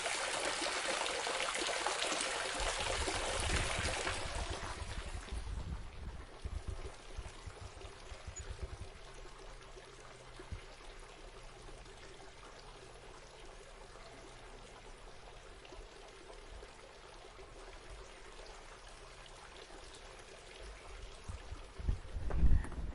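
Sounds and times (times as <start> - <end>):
fountain water splashing: 0.0 - 5.5.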